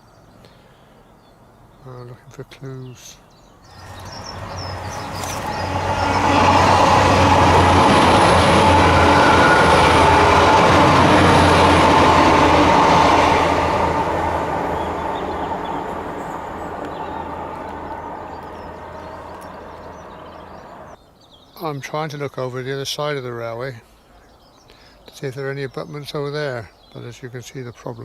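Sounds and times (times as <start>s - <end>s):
train passing: 3.7s - 21.0s.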